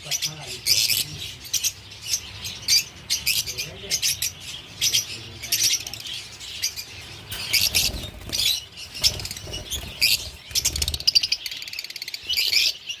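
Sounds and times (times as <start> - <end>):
caged birds chirping: 0.0 - 13.0
wings flapping: 7.4 - 11.4.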